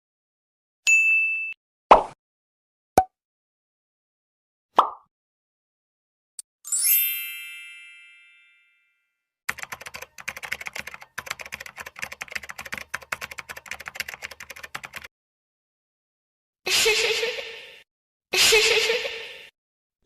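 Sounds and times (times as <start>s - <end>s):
bright chime: 6.6s - 9.2s
computer keyboard typing: 9.5s - 15.1s.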